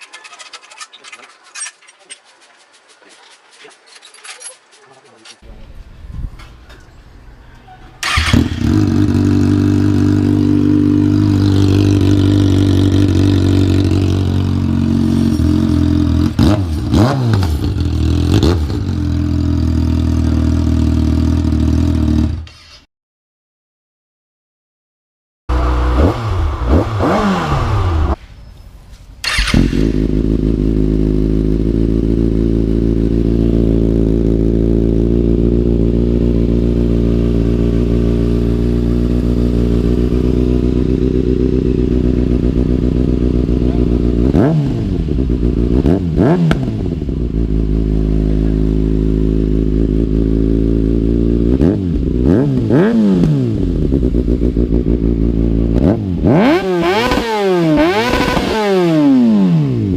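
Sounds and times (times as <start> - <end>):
motorcycle engine idling: 17.5 - 22.0, 29.3 - 52.2, 53.5 - 55.8
motorcycle throttle blips: 25.5 - 59.9.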